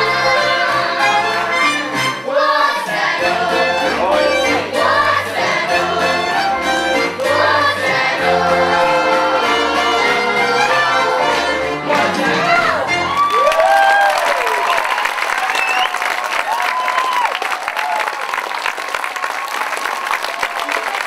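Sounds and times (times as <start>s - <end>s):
group of voices singing: 0.0s - 12.9s
instrumental accompaniment: 0.0s - 13.3s.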